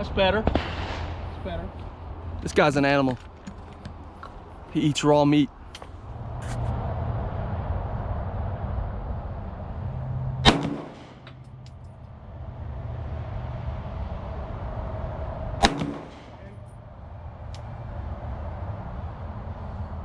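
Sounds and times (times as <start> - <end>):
low rumble: 5.5 - 20.0
pistol shots with echo: 10.4 - 11.3, 15.6 - 16.6.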